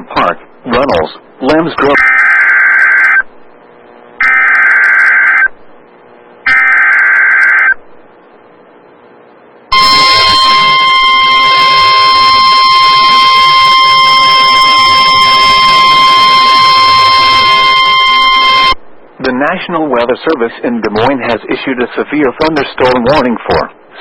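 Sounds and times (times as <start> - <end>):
steady attention tone: 0.0 - 19.6
harsh digital warbles: 9.7 - 18.8.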